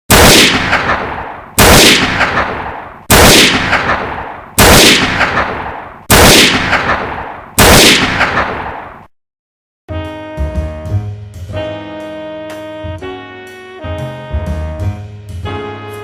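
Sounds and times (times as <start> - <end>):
loud blast with crackling tail: 0.1 - 8.9.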